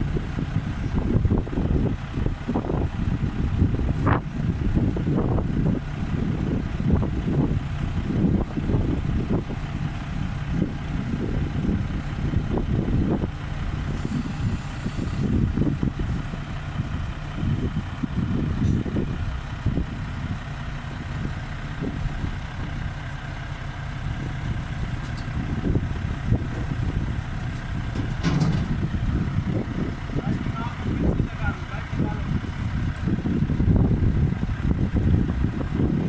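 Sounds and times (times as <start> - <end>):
engine rumble: 0.0 - 36.0.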